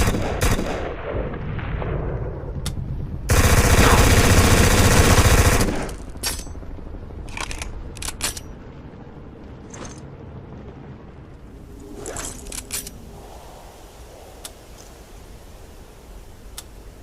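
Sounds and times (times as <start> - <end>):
submachine gun full-auto burst: 3.3 - 5.8.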